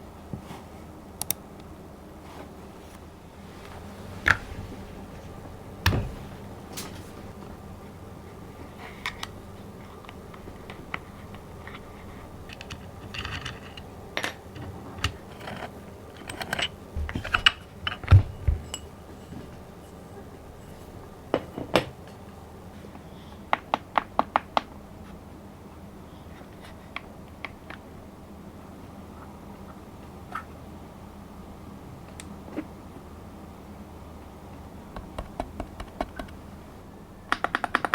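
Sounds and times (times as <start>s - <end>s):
keyboard parts clicking: 1.2s - 1.4s, 37.3s - 37.9s
small knocks: 16.3s - 19.6s.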